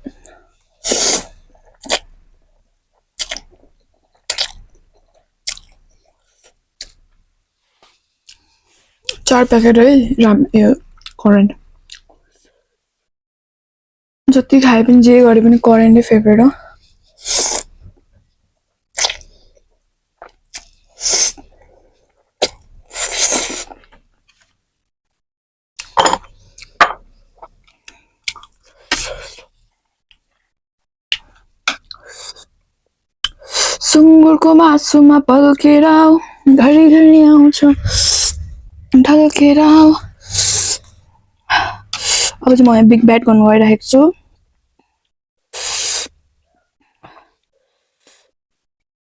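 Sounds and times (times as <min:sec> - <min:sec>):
slurping noodles: 0:00.8 - 0:02.0, 0:22.4 - 0:23.9, 0:37.7 - 0:38.8, 0:40.1 - 0:41.0.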